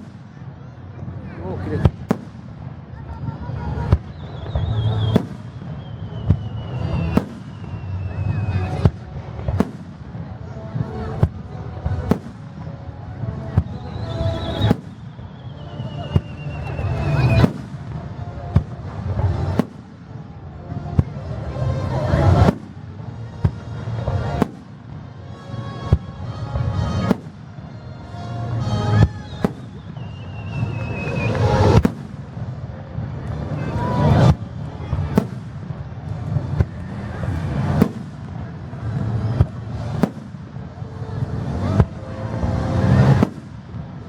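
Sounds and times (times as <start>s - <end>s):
fireworks bangs: 0.0s - 44.0s
rumble and crackle of fireworks: 0.0s - 44.0s
whistling firework shells: 3.8s - 10.0s, 13.5s - 20.0s, 28.6s - 32.4s, 42.8s - 43.8s.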